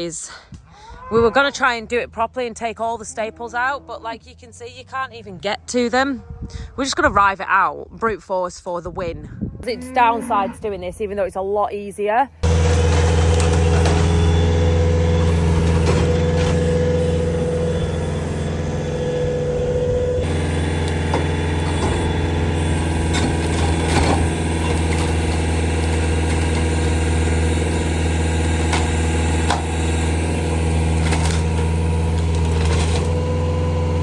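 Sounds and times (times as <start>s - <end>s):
thin whine: 12.4s - 33.2s
farm machine engine running: 12.4s - 34.0s.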